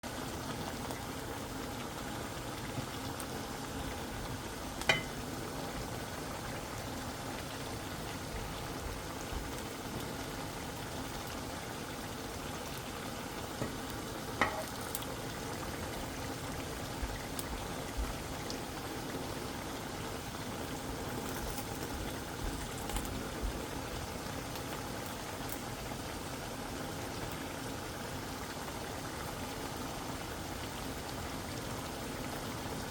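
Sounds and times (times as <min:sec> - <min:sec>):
food sizzling in a pan: 0:00.1 - 0:32.9.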